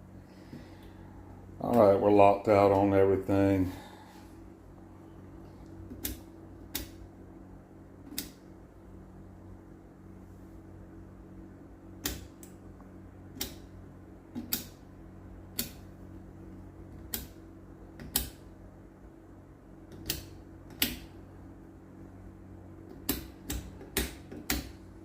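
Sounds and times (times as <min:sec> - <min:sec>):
steady low hum: 0:00.0 - 0:25.0
selector switch clicks: 0:05.6 - 0:07.0, 0:08.1 - 0:08.4, 0:12.0 - 0:12.6, 0:13.3 - 0:13.7, 0:14.4 - 0:14.8, 0:15.5 - 0:15.9, 0:18.0 - 0:18.5, 0:19.9 - 0:21.1.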